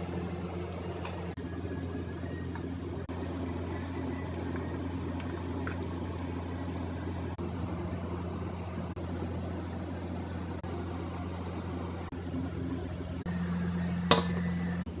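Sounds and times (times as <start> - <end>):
low electrical hum: 0.0 - 15.0.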